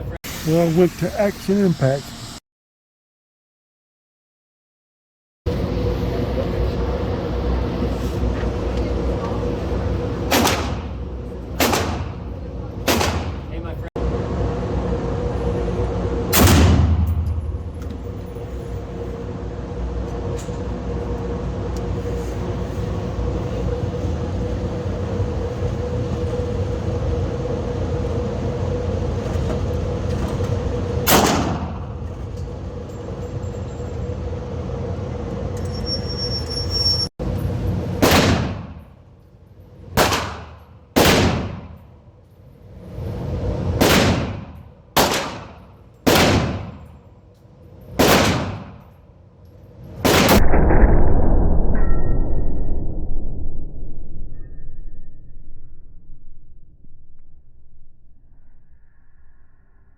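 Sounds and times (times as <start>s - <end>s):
steady background hum: 5.5s - 59.9s
gunshots: 10.3s - 11.0s, 11.6s - 12.2s, 12.9s - 13.5s, 38.0s - 38.8s, 40.0s - 41.8s, 43.8s - 46.9s, 48.0s - 48.8s, 50.0s - 52.2s.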